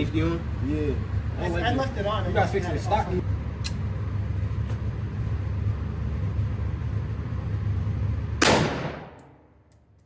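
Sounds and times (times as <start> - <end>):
low background rumble: 0.0 - 10.0
loud gunshot: 8.4 - 9.2.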